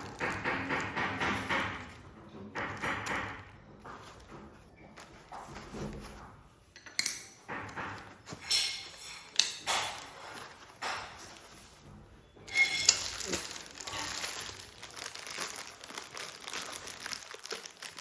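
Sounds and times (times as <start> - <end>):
handling noise: 0.0 - 18.0
small metal parts clinking: 12.5 - 14.9.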